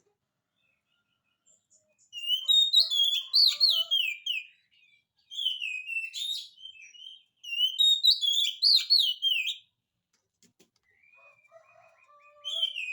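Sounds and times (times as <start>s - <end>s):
bird singing whistled notes: 2.1s - 9.7s, 12.4s - 12.9s.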